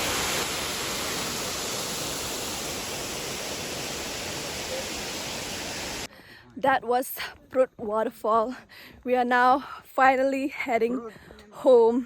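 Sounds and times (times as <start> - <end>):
waterfall rushing: 0.0 - 6.1.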